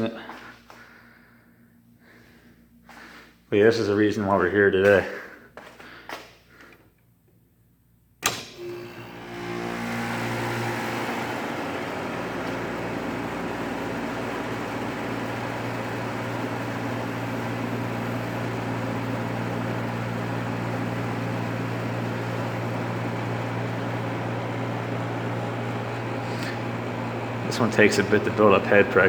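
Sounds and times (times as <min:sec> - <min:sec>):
air conditioner humming: 0:00.0 - 0:29.0
fan airflow noise: 0:08.2 - 0:29.0.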